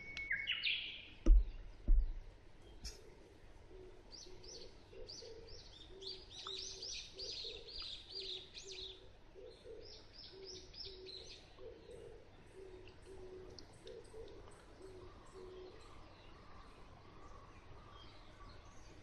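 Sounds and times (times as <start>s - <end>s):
small birds chirping: 0.0s - 19.0s
turtle dove cooing: 3.0s - 16.6s.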